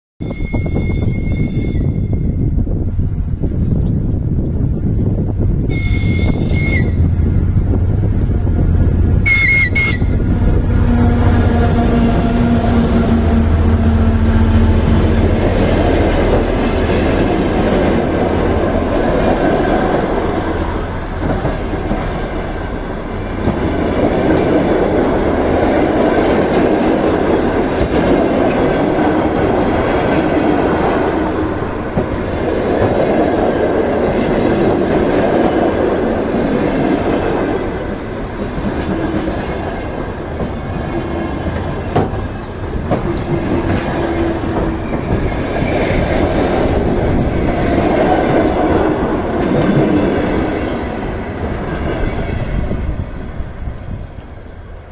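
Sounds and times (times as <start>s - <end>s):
wind buffeting microphone: 0.2s - 54.9s
locomotive low hum: 2.2s - 54.8s
train wheels clattering: 14.2s - 52.5s.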